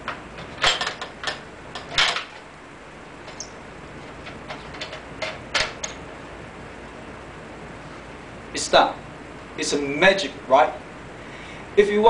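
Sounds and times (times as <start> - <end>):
metal clanks and clicks: 0.0 - 2.5, 3.2 - 6.0.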